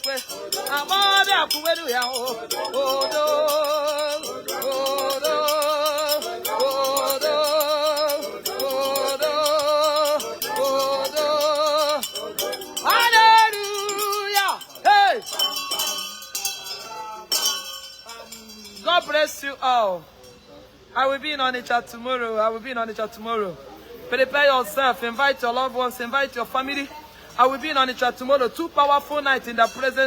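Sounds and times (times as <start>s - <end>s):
shaker rattle: 0.0s - 19.7s
wordless singing with vibrato: 0.0s - 20.0s.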